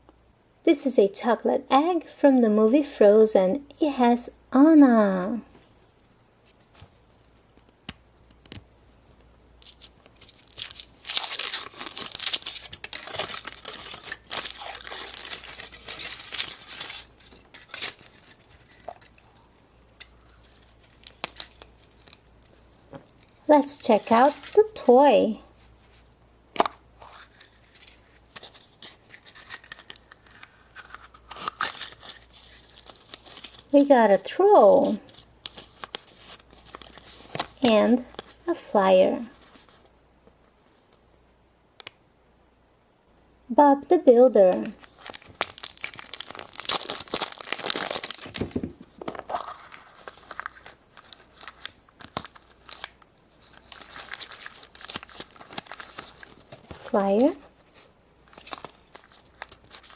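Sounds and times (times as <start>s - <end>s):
wrapper crinkling and tearing: 9.6s - 24.9s, 26.6s - 33.9s, 34.6s - 38.5s, 44.5s - 59.9s.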